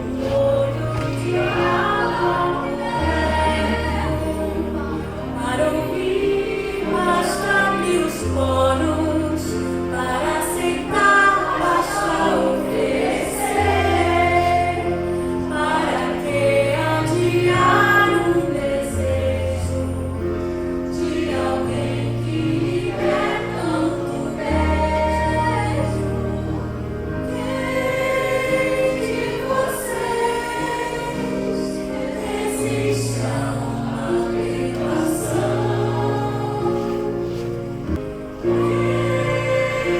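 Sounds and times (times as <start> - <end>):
people singing: 0.0 - 39.9.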